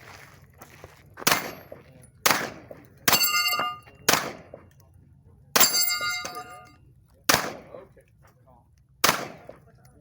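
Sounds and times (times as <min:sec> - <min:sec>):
pistol shots: 0:02.2 - 0:04.6, 0:07.3 - 0:07.8, 0:09.0 - 0:09.6
steel target clanging: 0:03.1 - 0:04.3, 0:05.6 - 0:06.8.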